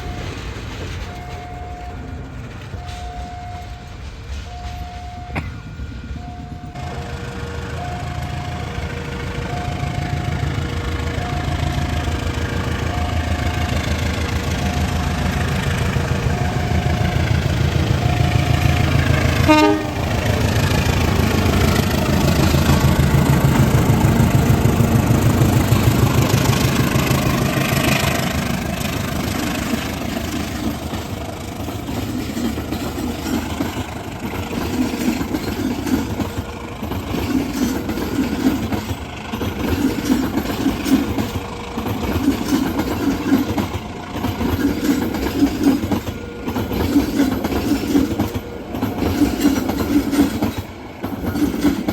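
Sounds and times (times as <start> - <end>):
train passing close by: 0.0 - 51.9
train horn: 18.0 - 21.3.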